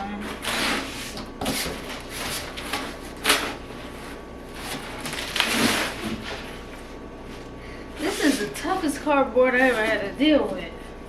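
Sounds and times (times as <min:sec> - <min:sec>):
cardboard scraping and rustling: 0:00.2 - 0:07.4, 0:08.0 - 0:08.9, 0:09.6 - 0:10.1
cardboard snapping: 0:00.4 - 0:03.7, 0:04.5 - 0:06.5.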